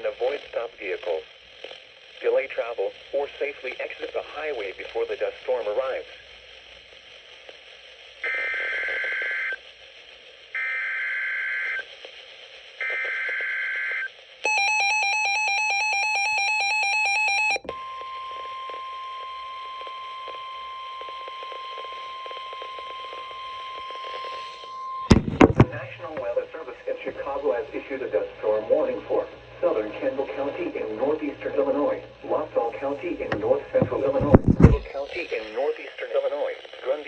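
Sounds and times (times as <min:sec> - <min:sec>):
harsh two-tone attention signal: 0:14.5 - 0:17.8.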